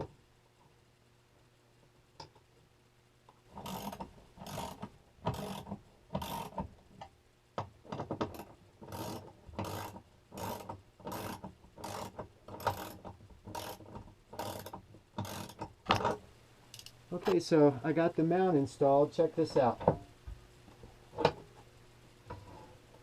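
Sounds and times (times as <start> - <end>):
ratchet wrench ratcheting: 3.6 - 6.6, 8.3 - 15.6.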